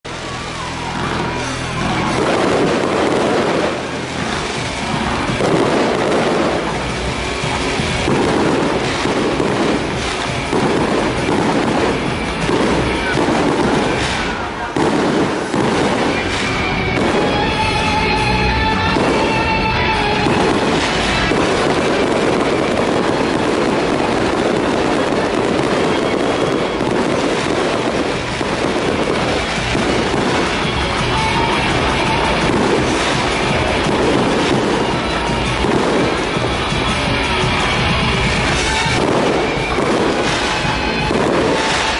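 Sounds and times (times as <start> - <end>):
fireworks bursting and crackling: 0.0 - 41.9.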